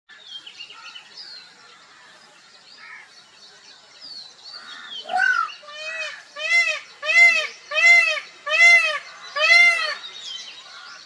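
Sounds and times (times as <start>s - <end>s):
birds chirping and whistling: 3.7s - 11.0s
loud bird call: 4.6s - 11.0s.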